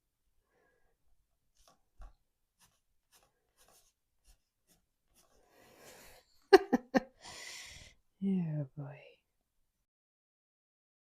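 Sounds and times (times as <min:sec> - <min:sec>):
pen scratching on paper: 0:02.6 - 0:05.5.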